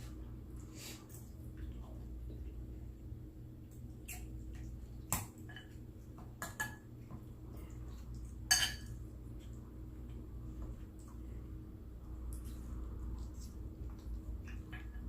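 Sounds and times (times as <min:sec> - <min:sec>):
steady low hum: 0:00.0 - 0:15.0
cutlery clinking against a plate: 0:08.5 - 0:09.0.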